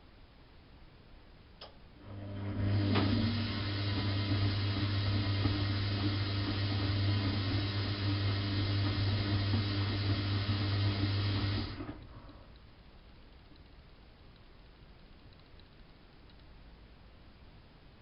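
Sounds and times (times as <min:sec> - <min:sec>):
washing machine humming: 0:02.0 - 0:12.4.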